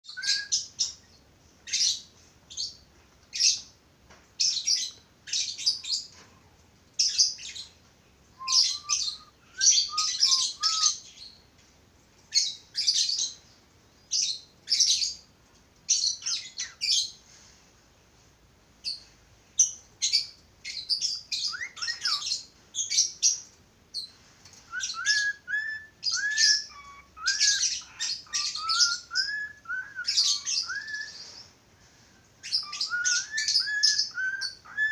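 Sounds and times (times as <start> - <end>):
budgerigars chirping: 8.5 - 11.2, 19.6 - 23.4, 24.8 - 31.4, 32.4 - 34.9.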